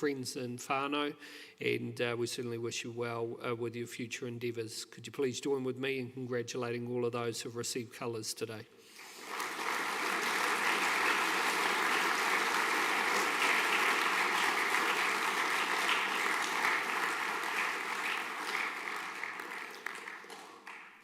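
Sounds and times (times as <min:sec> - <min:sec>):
audience applauding: 0:09.0 - 0:21.0.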